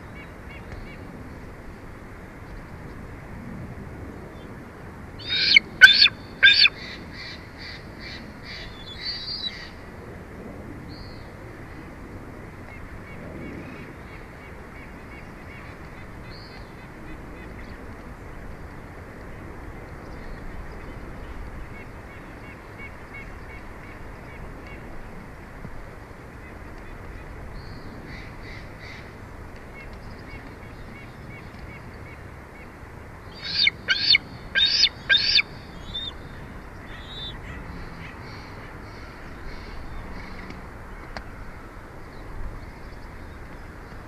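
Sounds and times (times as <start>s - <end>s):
eagle chittering calls: 5.2s - 9.8s, 33.3s - 40.4s.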